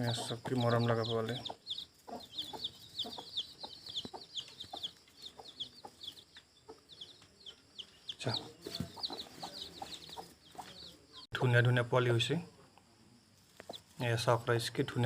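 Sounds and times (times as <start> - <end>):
chicks peeping: 0.0 - 11.3, 13.5 - 14.2
hen clucking softly: 0.1 - 10.8.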